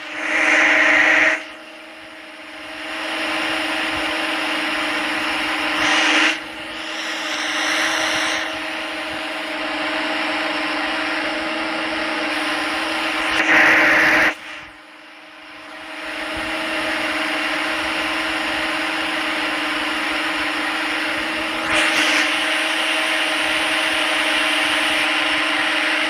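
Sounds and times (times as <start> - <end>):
lathe motor hum: 0.0 - 14.2.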